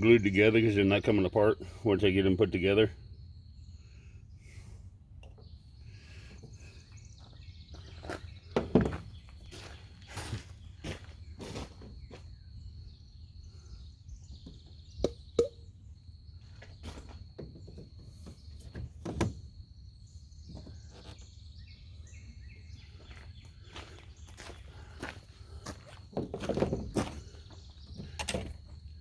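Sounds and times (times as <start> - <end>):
bird chirps: 0.0 - 29.0
knocks of pipe fittings: 14.5 - 15.6.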